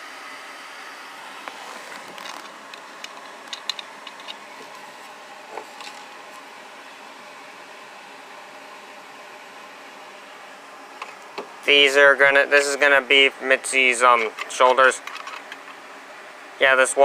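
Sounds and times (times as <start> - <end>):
fan-like hiss: 0.0 - 17.0
clicks and knocks of handling: 2.0 - 4.8, 14.2 - 15.8.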